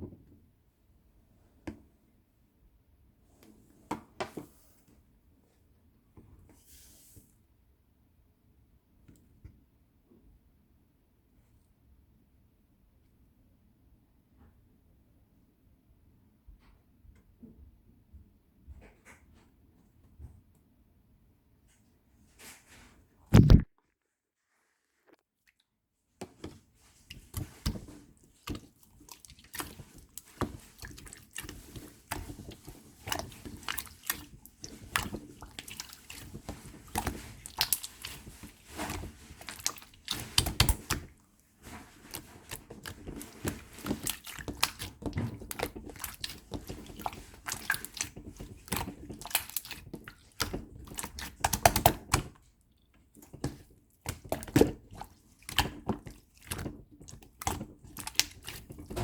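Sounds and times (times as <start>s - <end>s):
slime squished by hand: 27.0s - 59.0s.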